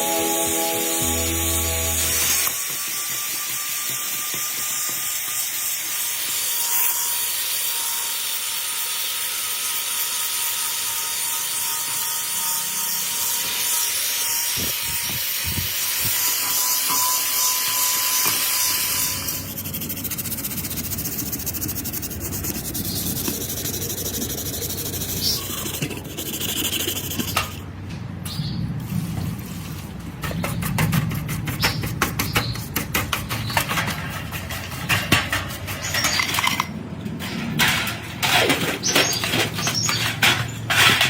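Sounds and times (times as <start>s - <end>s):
buzzy rapidly pulsing texture: 0.0s - 2.6s, 19.2s - 27.6s
hissing rubbing workshop noise: 0.0s - 27.9s, 28.8s - 41.0s.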